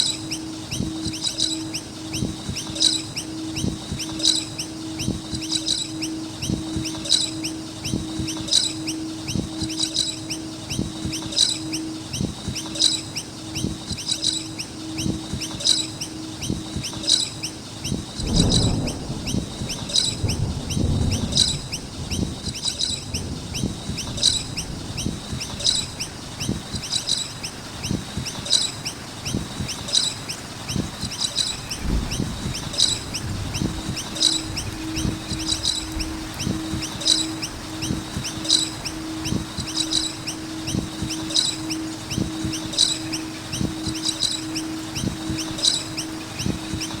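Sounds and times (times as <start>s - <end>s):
birds chirping and chattering: 0.1s - 47.0s
low rumble: 18.1s - 45.7s.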